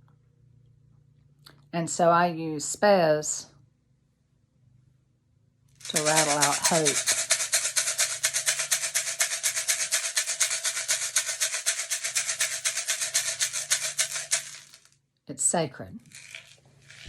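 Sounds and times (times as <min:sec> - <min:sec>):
rattle shaken quickly: 0:05.8 - 0:14.9, 0:16.0 - 0:17.0.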